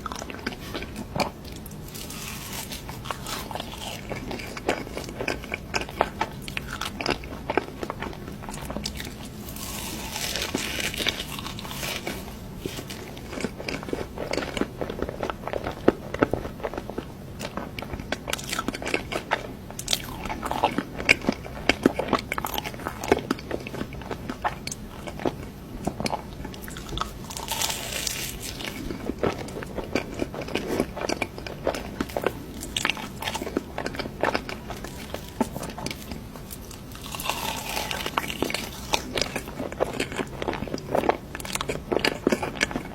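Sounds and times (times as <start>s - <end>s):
chewing and crunching cake: 0.0s - 42.9s.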